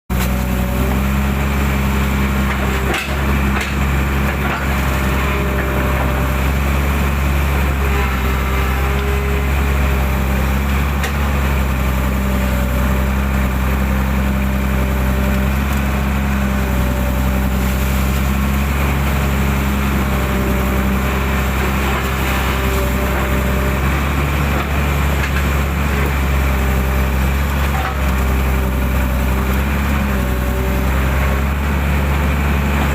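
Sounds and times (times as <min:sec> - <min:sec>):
diesel engine running: 0:00.1 - 0:32.9
hydraulic whine: 0:00.1 - 0:32.9.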